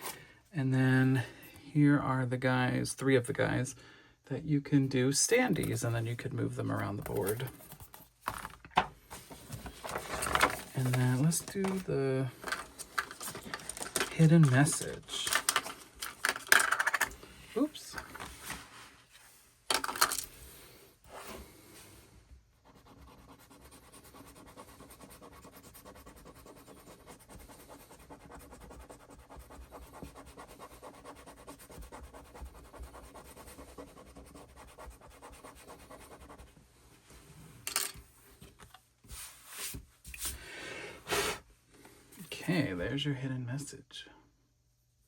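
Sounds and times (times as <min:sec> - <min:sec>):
scratch card rasping: 0:22.7 - 0:36.4.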